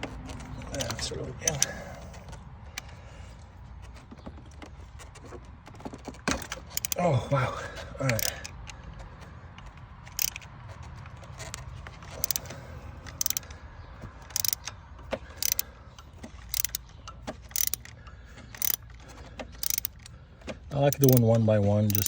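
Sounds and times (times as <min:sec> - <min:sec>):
ratchet wrench clicking: 0:00.5 - 0:01.9, 0:06.3 - 0:07.0, 0:08.0 - 0:08.8, 0:09.6 - 0:10.5, 0:11.4 - 0:13.5, 0:14.3 - 0:20.1, 0:20.7 - 0:22.0.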